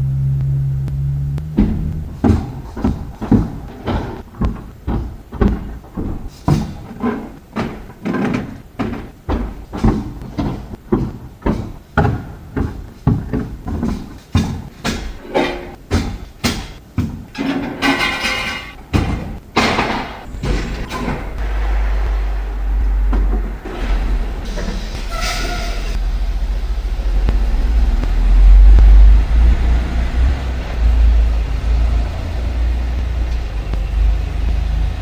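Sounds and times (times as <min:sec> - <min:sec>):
equipment knocking and thumping: 0:00.9 - 0:25.0
scraping squeal: 0:20.3 - 0:26.5.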